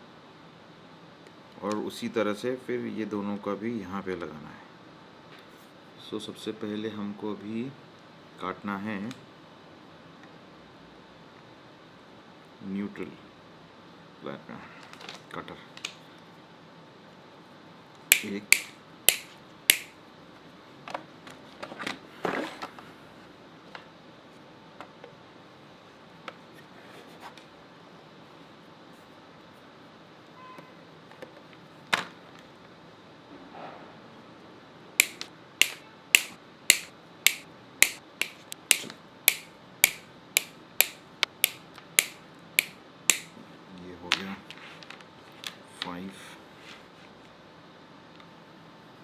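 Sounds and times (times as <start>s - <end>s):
cable cutter snipping cable: 18.1s - 19.9s, 35.0s - 43.3s.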